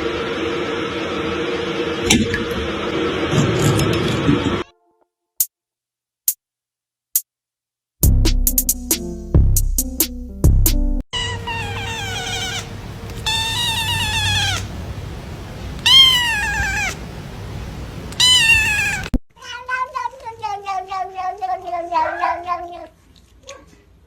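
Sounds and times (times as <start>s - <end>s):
cats meowing: 11.2s - 15.0s, 15.7s - 17.2s, 18.1s - 22.9s.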